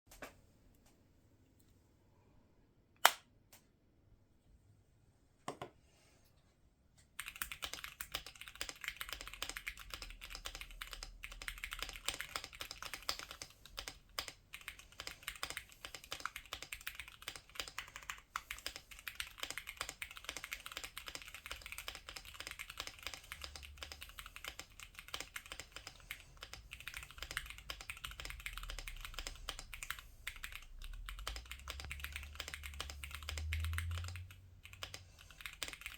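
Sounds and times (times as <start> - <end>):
typing on mechanical keyboard: 7.2 - 35.9.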